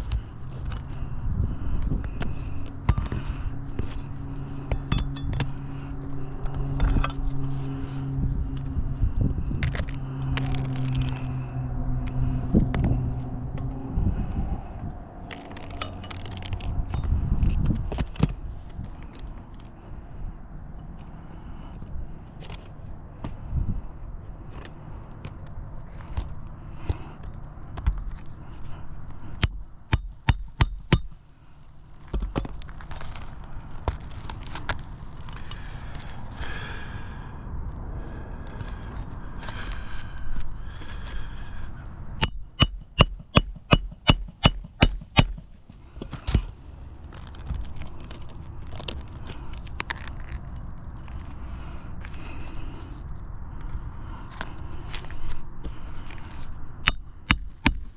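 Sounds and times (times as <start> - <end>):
sharp ringing knocks: 2.9 - 3.9, 4.6 - 5.5, 29.4 - 31.2, 42.2 - 45.6, 56.8 - 57.9
sharp metallic taps: 29.4 - 31.2, 42.2 - 46.5, 56.8 - 57.9.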